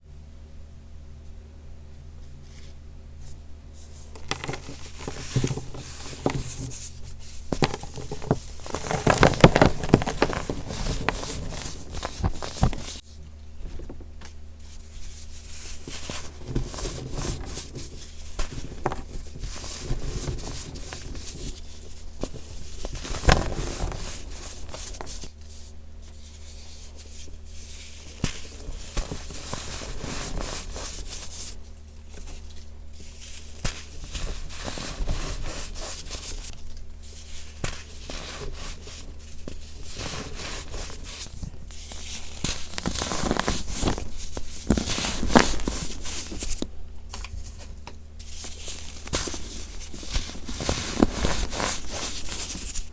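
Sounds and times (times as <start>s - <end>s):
baking soda crunching by hand: 4.0s - 13.0s
powder squeaking: 4.0s - 13.0s.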